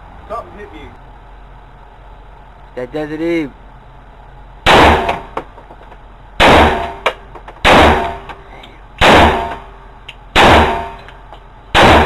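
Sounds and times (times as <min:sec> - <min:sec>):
pistol shots: 0:04.6 - 0:05.4, 0:06.4 - 0:08.4, 0:09.0 - 0:09.7, 0:10.3 - 0:11.1, 0:11.7 - 0:12.0.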